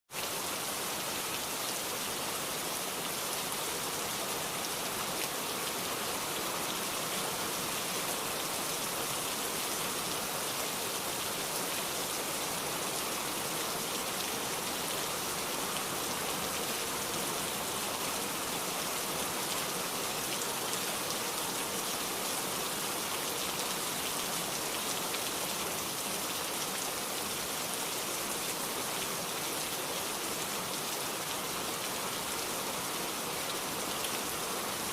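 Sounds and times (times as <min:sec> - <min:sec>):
heavy rain downpour: 0:00.1 - 0:34.9.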